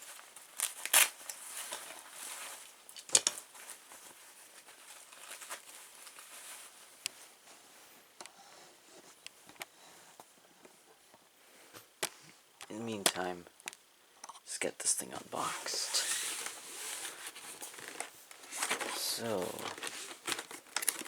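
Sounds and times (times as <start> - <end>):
handling rustling: 15.4 - 21.0.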